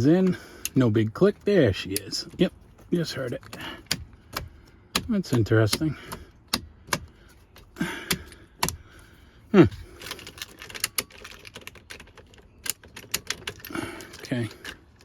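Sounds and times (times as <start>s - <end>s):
plastic parts and keys clicking: 1.4s - 9.0s, 9.6s - 15.0s.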